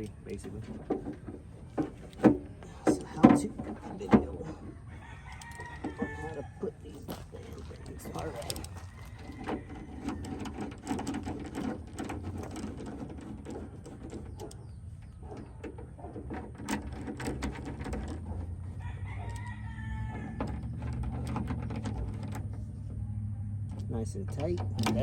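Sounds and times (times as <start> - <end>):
rooster crowing: 4.6 - 6.8, 7.9 - 10.4, 18.7 - 20.8.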